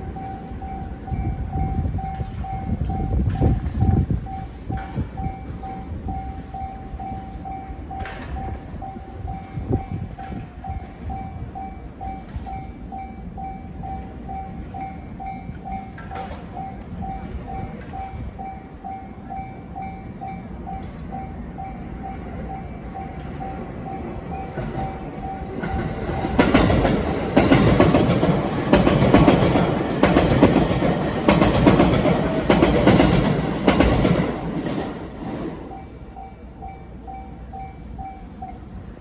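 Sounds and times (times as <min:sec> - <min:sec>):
train wheels clacking over rail joints: 0:00.0 - 0:12.7, 0:15.3 - 0:18.6, 0:23.2 - 0:35.8
level-crossing warning bell dinging: 0:00.0 - 0:39.0.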